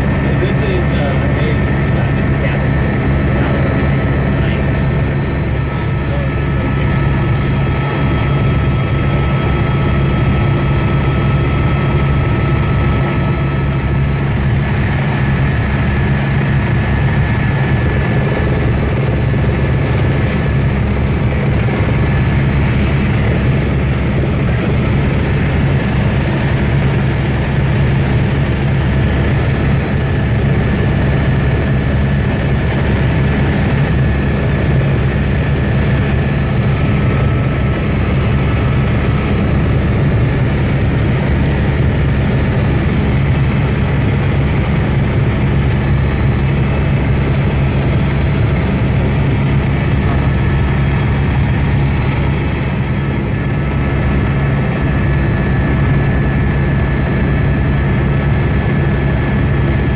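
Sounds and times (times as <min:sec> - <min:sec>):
helicopter engine and rotor drone: 0:00.0 - 0:59.9.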